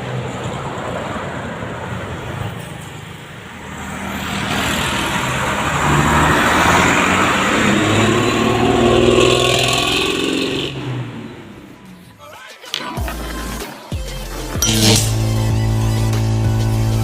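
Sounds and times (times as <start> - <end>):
vehicle approaching: 0.0 - 12.3
vehicle engine running: 14.6 - 17.0.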